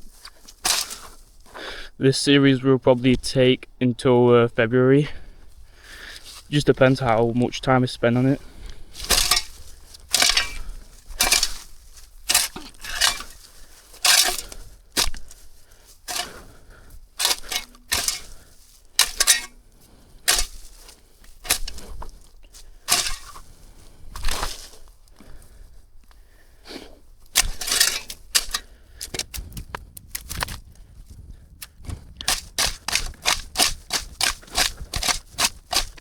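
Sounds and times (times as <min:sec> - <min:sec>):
shovel scraping into dirt: 0:00.0 - 0:01.6, 0:06.0 - 0:07.2, 0:08.2 - 0:25.5, 0:26.7 - 0:29.6, 0:31.6 - 0:36.0.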